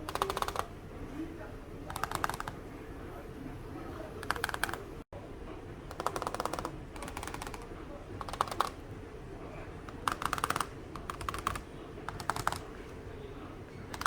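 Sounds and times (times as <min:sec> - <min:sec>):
laptop keyboard typing: 0:00.0 - 0:00.8, 0:01.8 - 0:02.6, 0:04.2 - 0:05.0, 0:05.9 - 0:08.9, 0:09.9 - 0:13.0, 0:13.8 - 0:14.0.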